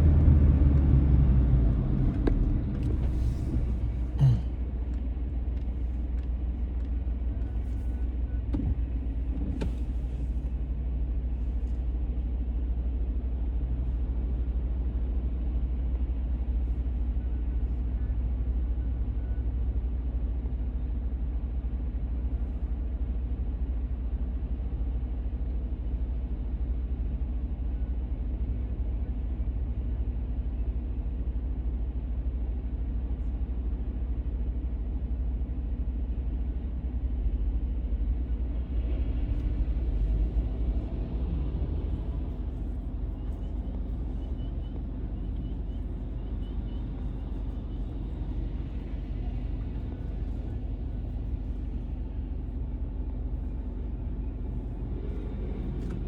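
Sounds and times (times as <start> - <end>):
car driving on wet road: 0.0 - 4.2, 38.6 - 52.6.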